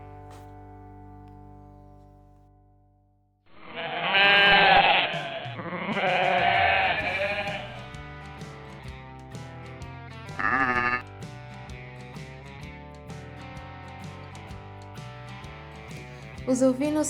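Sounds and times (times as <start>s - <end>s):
quiet background music: 0.0s - 2.5s, 6.0s - 17.0s
sheep bleating: 3.5s - 7.9s, 10.3s - 11.0s.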